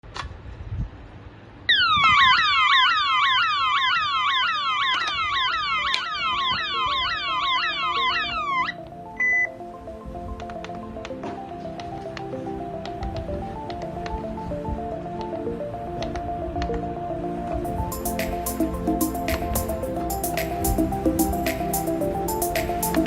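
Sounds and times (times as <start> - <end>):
electronic alarm siren whooping: 1.7 - 9.5.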